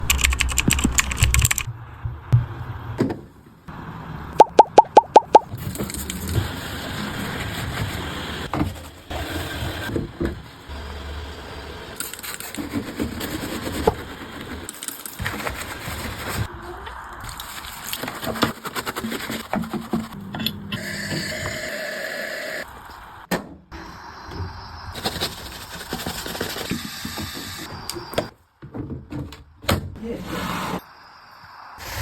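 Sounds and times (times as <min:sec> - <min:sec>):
quick electronic beeps: 0:04.4 - 0:05.5.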